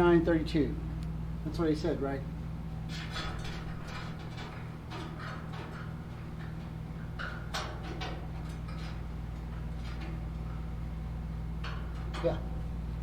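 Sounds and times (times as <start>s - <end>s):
steady low hum: 0.0s - 13.0s
light clicks and rustles: 2.9s - 10.7s.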